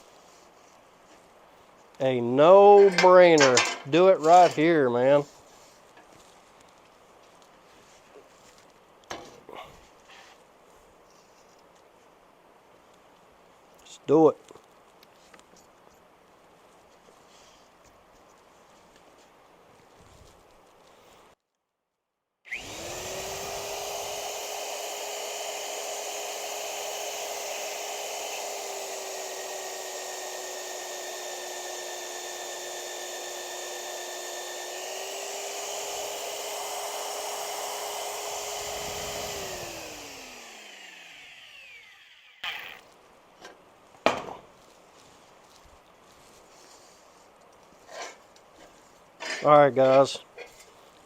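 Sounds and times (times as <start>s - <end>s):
power tool motor whine: 22.5s - 42.9s.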